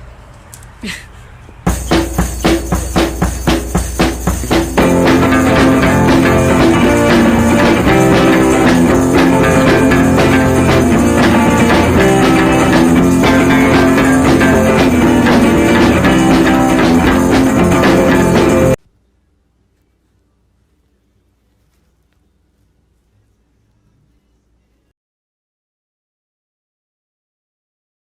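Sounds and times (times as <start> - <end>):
upbeat rock music: 1.7 - 18.8.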